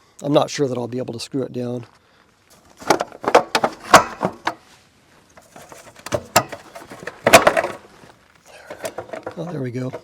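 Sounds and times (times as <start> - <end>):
light scraping: 2.5 - 10.0.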